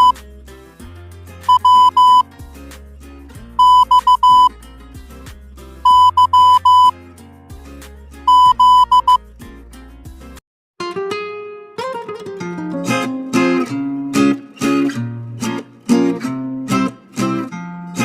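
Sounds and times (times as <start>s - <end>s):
background music with bass line: 0.0s - 10.4s
morse code beeps: 1.5s - 2.3s, 3.6s - 4.5s, 5.8s - 6.9s, 8.3s - 9.2s.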